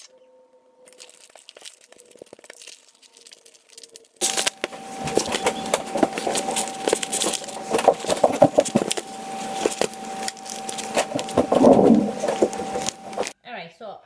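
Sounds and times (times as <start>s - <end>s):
water boiling and bubbling: 0.9s - 13.4s
faint high hum: 4.2s - 13.4s.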